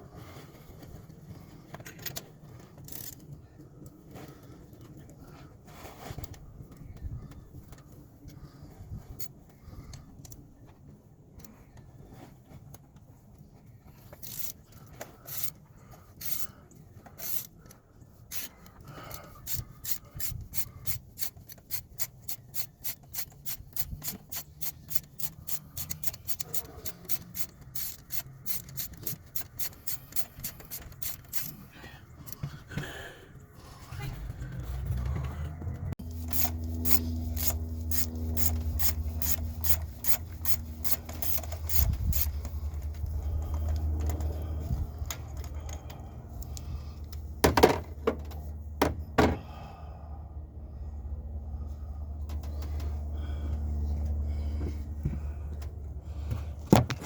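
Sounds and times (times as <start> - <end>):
ratchet wrench clicking: 2.9 - 3.2, 14.2 - 14.6, 15.2 - 15.6, 16.2 - 16.5, 17.2 - 17.6, 18.3 - 31.7, 36.0 - 44.4.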